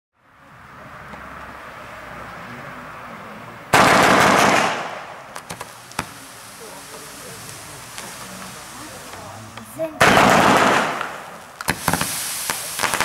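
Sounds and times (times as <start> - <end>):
firework shot rushing burst: 3.7 - 9.0, 9.8 - 13.0
firework sharp cracks: 3.7 - 13.0
firework fuse hiss: 4.0 - 13.0.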